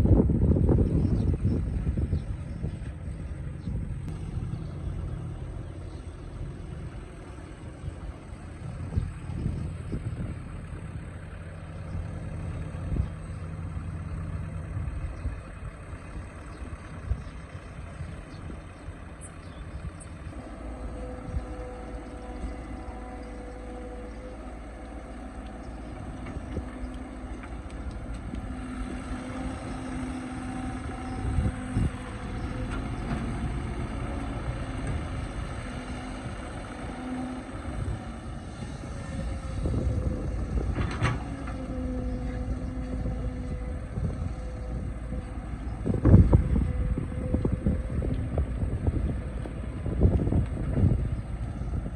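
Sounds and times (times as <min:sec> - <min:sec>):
excavator diesel engine: 0:00.0 - 0:51.9
hydraulic whine: 0:20.0 - 0:51.9.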